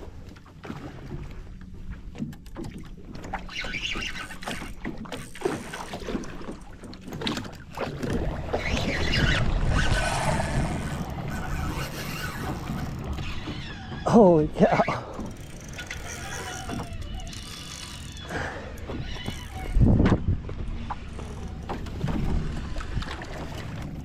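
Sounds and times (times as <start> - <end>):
water sloshing against boat hull: 0.0 - 24.0
wind buffeting microphone: 19.6 - 20.9.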